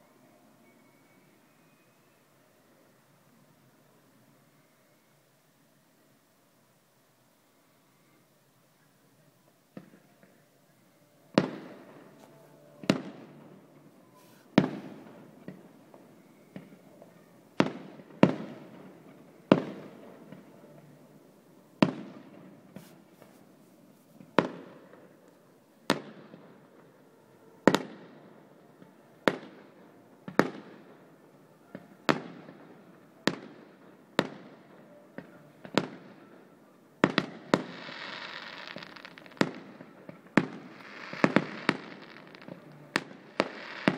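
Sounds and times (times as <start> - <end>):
fireworks bangs: 11.3 - 21.2, 37.0 - 43.9
fireworks hissing: 37.6 - 39.5, 40.4 - 43.9.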